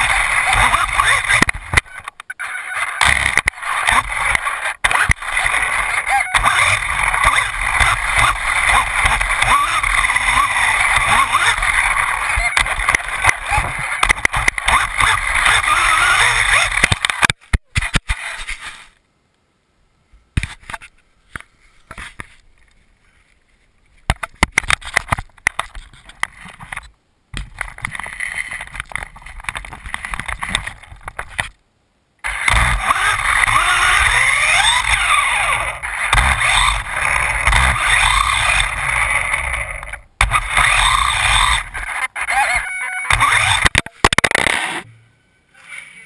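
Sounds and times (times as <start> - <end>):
clicks and bumps: 0.0 - 2.3, 3.0 - 18.2, 24.0 - 31.6, 32.3 - 42.3, 43.1 - 44.7
electric motor whining: 3.0 - 17.0, 32.3 - 43.7.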